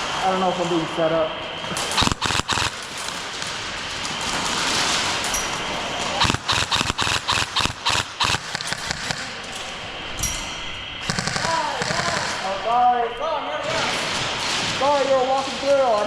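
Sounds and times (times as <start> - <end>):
airsoft gunfire: 1.8 - 10.0, 11.0 - 12.8.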